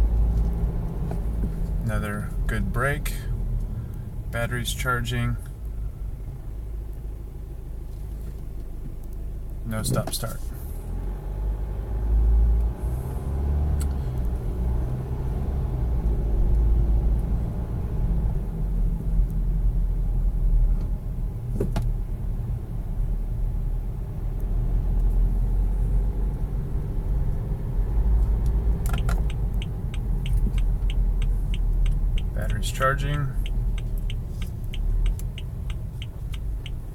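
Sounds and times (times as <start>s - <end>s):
car engine and road noise: 0.0s - 36.9s
quick even ticks: 29.0s - 36.9s.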